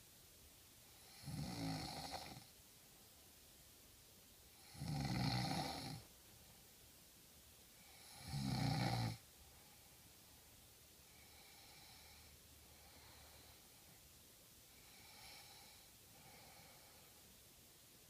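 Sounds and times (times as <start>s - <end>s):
loud snoring: 1.0s - 2.5s, 4.6s - 6.0s, 7.9s - 9.2s.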